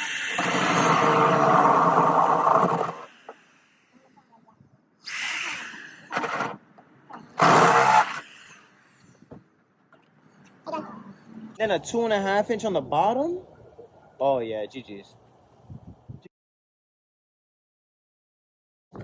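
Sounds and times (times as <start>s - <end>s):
power drill running: 0.0s - 3.1s.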